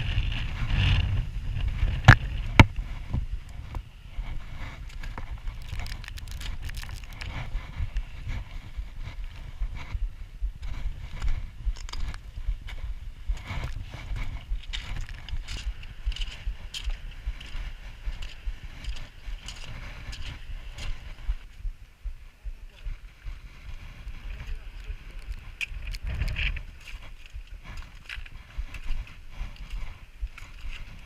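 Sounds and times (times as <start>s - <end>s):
wind buffeting microphone: 0.0s - 31.0s
short clicks and rustles: 5.0s - 7.4s.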